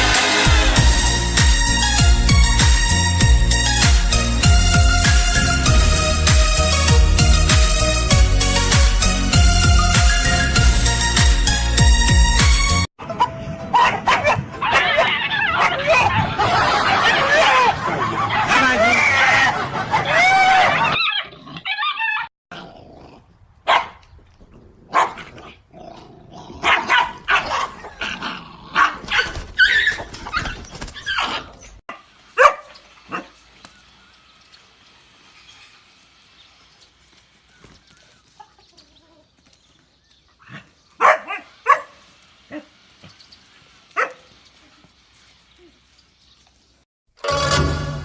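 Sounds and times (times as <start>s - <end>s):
dog barking: 13.2s - 16.1s, 23.6s - 24.0s, 24.9s - 25.3s, 26.6s - 28.0s, 28.7s - 29.9s, 32.4s - 33.4s, 40.4s - 42.7s, 44.0s - 44.3s.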